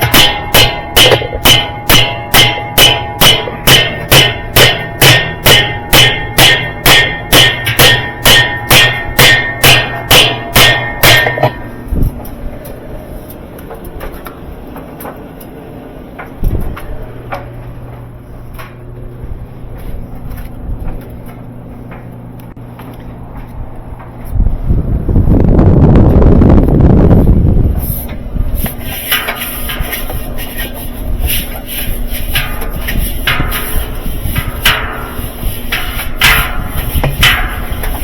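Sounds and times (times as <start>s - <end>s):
hammering on metal: 0.0s - 11.8s, 32.2s - 38.0s
scattered clanks and knocks: 0.0s - 12.8s, 13.5s - 18.8s, 28.1s - 38.0s
low steady hum: 0.0s - 38.0s.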